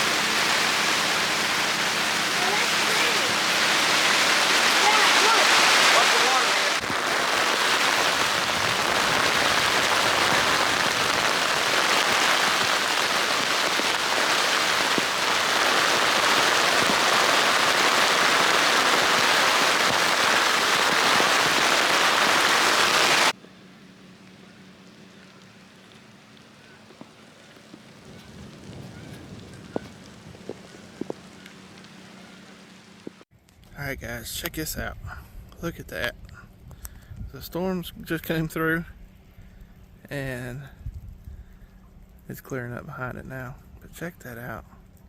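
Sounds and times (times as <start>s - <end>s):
heavy rain pouring: 0.0s - 33.2s.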